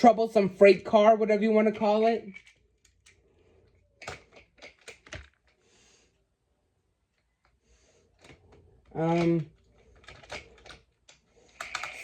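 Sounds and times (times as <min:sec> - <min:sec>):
plastic toy trains clicking: 0:01.7 - 0:05.6, 0:07.4 - 0:12.0.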